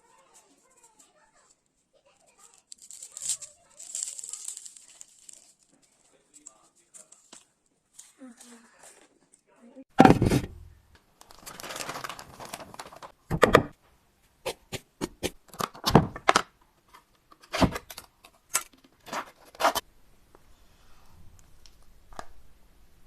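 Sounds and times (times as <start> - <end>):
rustling scrape: 0.0 - 9.2.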